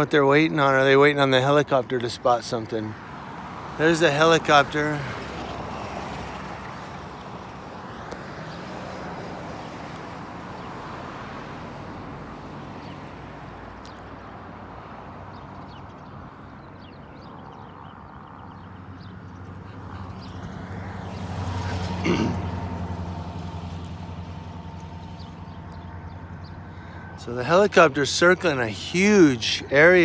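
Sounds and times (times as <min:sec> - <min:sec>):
street ambience: 0:00.0 - 0:30.0
helicopter drone overhead: 0:17.8 - 0:30.0.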